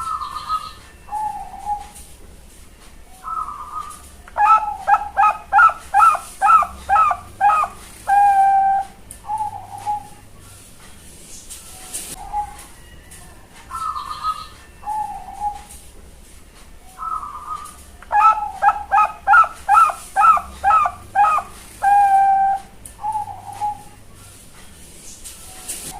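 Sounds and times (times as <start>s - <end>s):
dove cooing: 0.0s - 2.0s, 3.2s - 10.3s, 12.2s - 12.8s, 13.7s - 15.7s, 17.0s - 24.1s.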